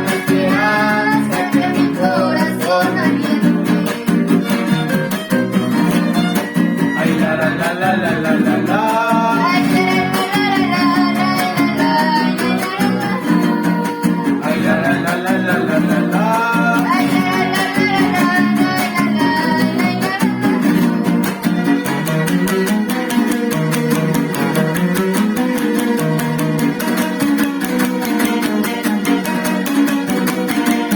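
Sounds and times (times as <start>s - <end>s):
person singing: 0.0s - 24.8s
guitars strumming: 0.0s - 30.9s
violin: 0.0s - 30.9s.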